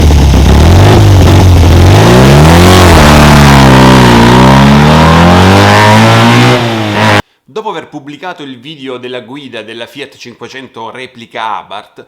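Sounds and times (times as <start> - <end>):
car engine revving loudly: 0.0 - 7.2.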